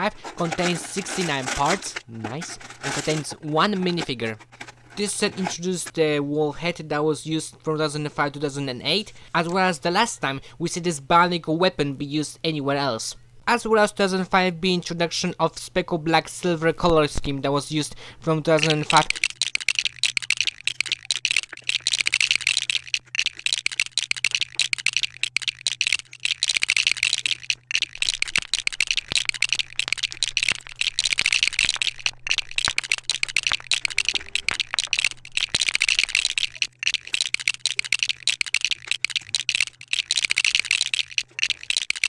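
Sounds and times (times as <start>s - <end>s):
plastic bricks rattling and clicking: 0.0s - 7.4s, 16.6s - 42.0s
faint electrical hum: 0.0s - 42.0s.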